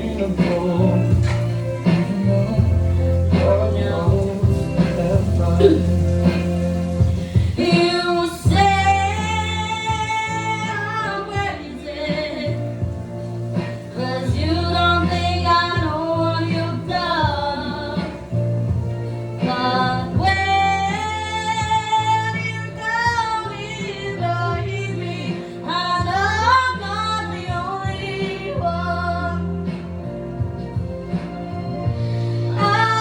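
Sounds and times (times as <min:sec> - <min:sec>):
instrumental backing track: 0:00.0 - 0:33.0
woman singing: 0:07.4 - 0:30.0, 0:32.4 - 0:33.0.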